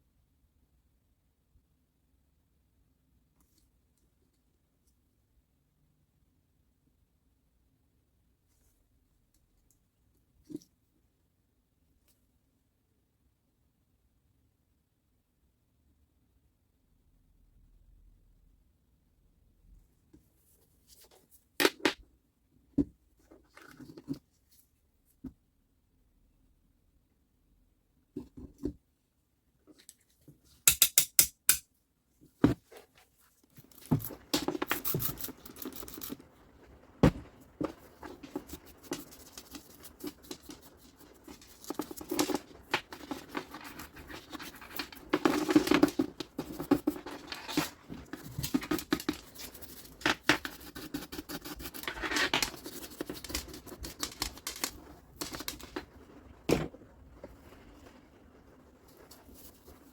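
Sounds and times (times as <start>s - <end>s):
sharp clicks of small parts: 30.6s - 31.7s
scraping and rubbing: 32.4s - 59.9s.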